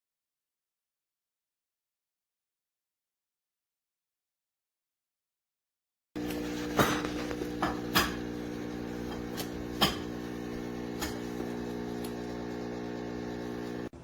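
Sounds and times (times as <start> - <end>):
espresso machine pump humming: 6.2 - 14.0.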